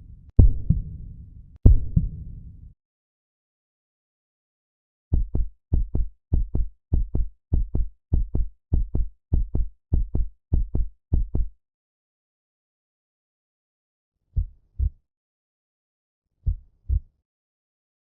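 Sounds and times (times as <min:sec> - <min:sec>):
heartbeat low thumps: 0:00.3 - 0:02.4, 0:05.1 - 0:11.5, 0:14.4 - 0:15.0, 0:16.4 - 0:17.1.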